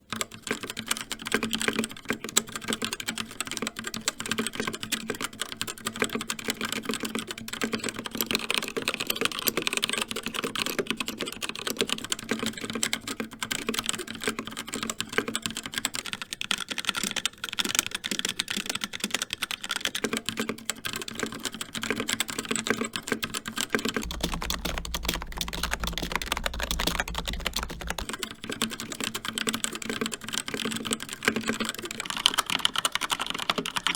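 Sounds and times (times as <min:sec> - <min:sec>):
fast typing on keyboards: 0:00.4 - 0:22.9, 0:24.0 - 0:33.9
low hum: 0:24.0 - 0:28.4.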